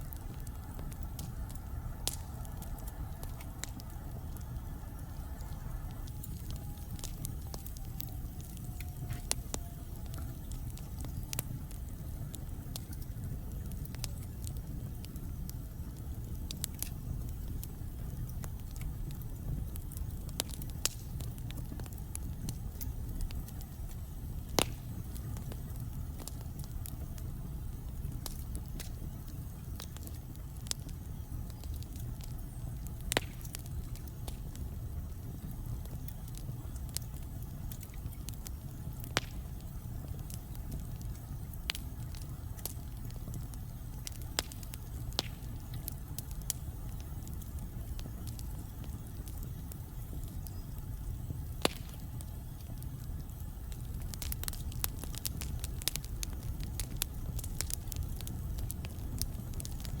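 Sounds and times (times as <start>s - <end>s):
low rumble of flames: 0.0s - 60.0s
wood crackling and popping: 0.0s - 60.0s.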